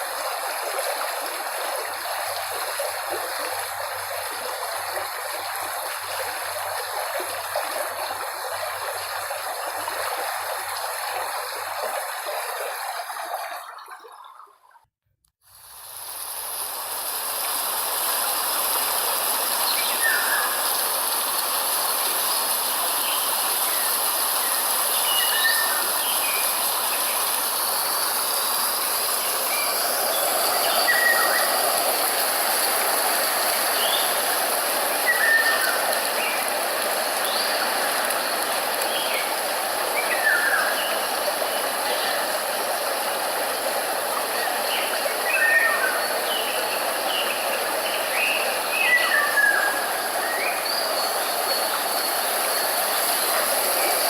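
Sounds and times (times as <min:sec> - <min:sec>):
steady rushing hiss: 0:15.5 - 0:54.0.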